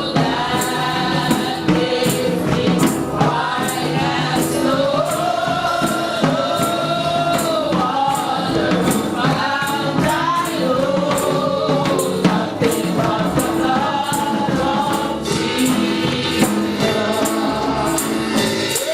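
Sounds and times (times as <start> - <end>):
tambourine beat: 0.0 - 18.9
voices singing gospel: 0.0 - 18.9.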